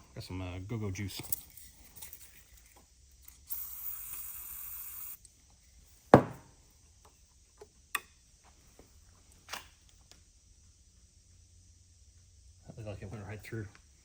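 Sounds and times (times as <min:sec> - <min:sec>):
sharp knock: 0:06.2 - 0:06.4.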